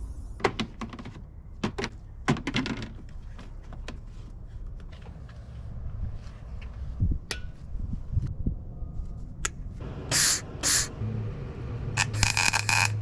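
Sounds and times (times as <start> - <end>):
arc welding crackling and buzzing: 12.0 - 13.0.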